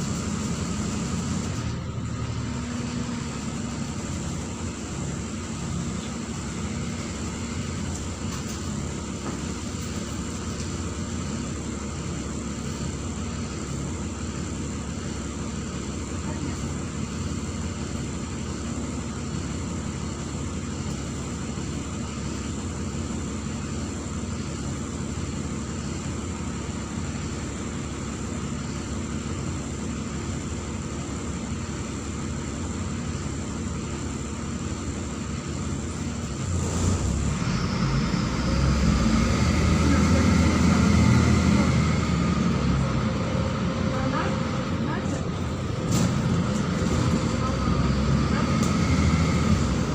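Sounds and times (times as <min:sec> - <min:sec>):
bus diesel engine running: 0:00.0 - 0:49.9
engine whine rising: 0:34.5 - 0:49.9.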